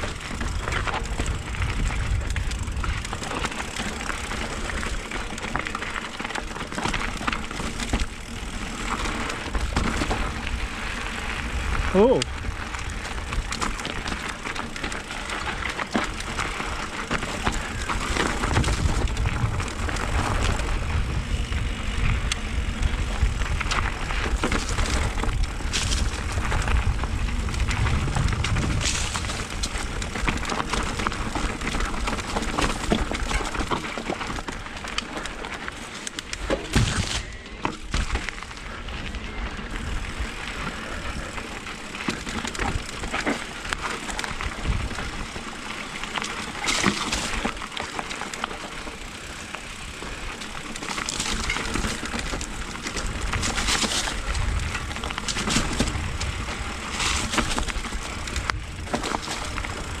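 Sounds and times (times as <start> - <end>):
wind rushing over microphone: 0.0 - 3.2, 17.8 - 30.2
bike rattling over bumps: 0.0 - 60.0
bike tyre noise: 0.0 - 60.0.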